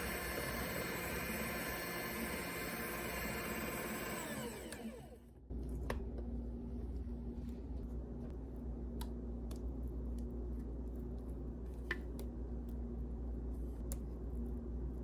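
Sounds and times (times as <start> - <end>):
electric mixer motor hum: 0.0 - 5.3.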